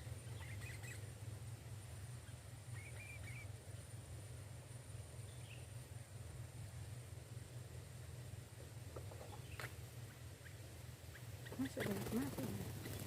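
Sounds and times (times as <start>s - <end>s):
faint bird chirps: 0.0s - 1.2s, 2.2s - 4.0s, 9.1s - 13.0s
steady low rumble: 0.0s - 13.0s.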